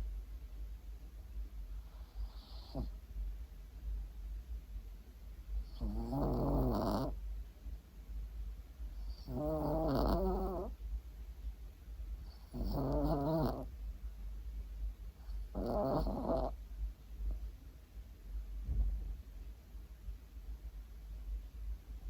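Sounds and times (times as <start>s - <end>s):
dog snoring: 1.8s - 3.0s, 5.6s - 7.2s, 8.9s - 10.8s, 12.2s - 13.7s, 15.2s - 16.6s.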